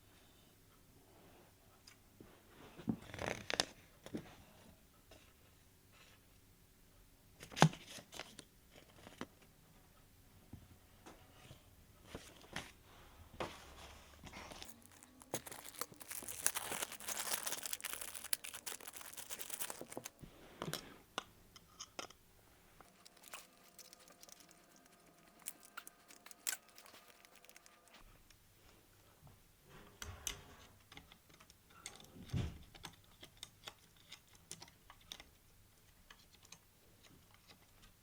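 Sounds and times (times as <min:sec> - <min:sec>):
packaging crinkling and tearing: 0:14.4 - 0:20.2, 0:22.9 - 0:28.0.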